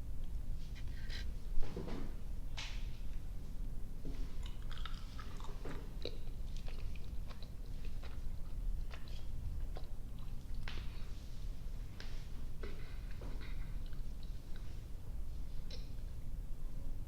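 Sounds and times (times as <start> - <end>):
chewing sticky candy: 4.3 - 11.1, 12.6 - 14.9.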